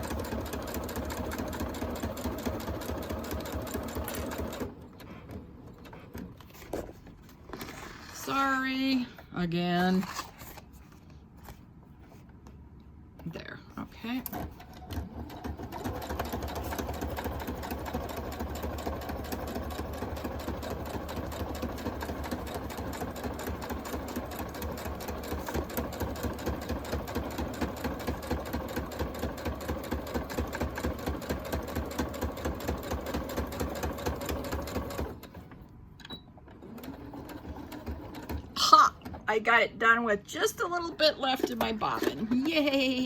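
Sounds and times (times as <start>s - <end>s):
sewing machine stitching: 0.0s - 5.9s, 14.1s - 35.6s, 36.4s - 39.2s.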